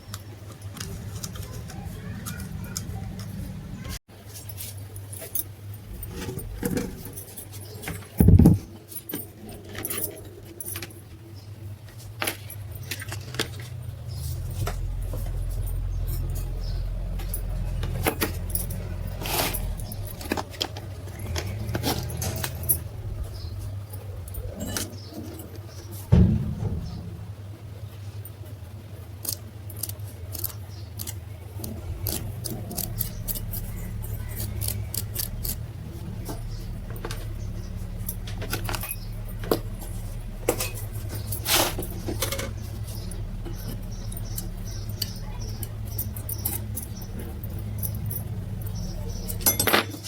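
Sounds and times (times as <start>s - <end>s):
metal tools clinking: 12.2s - 27.5s, 29.2s - 50.0s
heavy knock: 26.1s - 27.5s
low hum: 26.1s - 28.3s.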